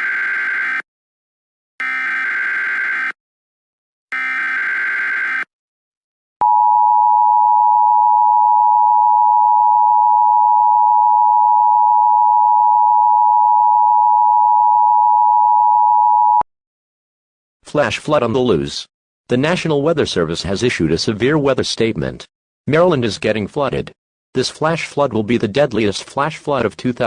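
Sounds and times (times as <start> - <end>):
harsh digital data buzz: 0.0 - 0.8, 1.8 - 3.2, 4.1 - 5.5
loud steady dual tone: 4.1 - 5.5, 6.4 - 16.4.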